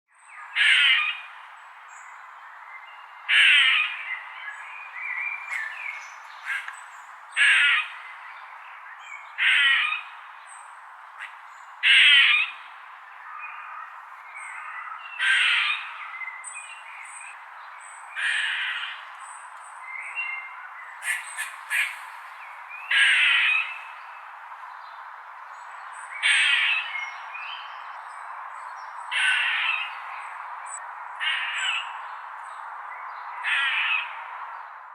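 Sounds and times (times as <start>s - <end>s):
squirrel squawking calls: 0.6s - 1.2s, 3.3s - 4.0s, 6.4s - 6.7s, 7.4s - 8.0s, 9.4s - 10.1s, 11.2s - 12.6s, 15.2s - 15.9s, 18.2s - 19.0s, 21.0s - 22.2s, 22.8s - 23.8s, 26.2s - 26.9s, 29.1s - 29.9s, 31.2s - 31.9s, 33.4s - 34.2s.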